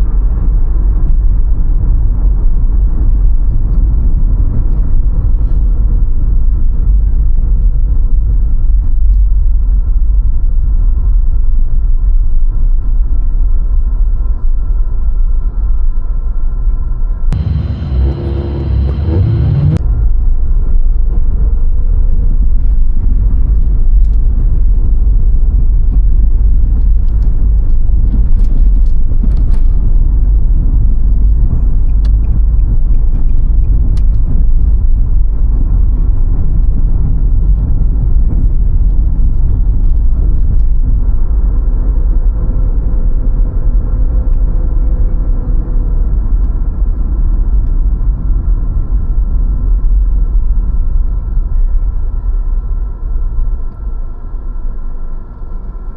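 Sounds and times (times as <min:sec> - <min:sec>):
car engine and road rumble: 0:00.0 - 0:55.9.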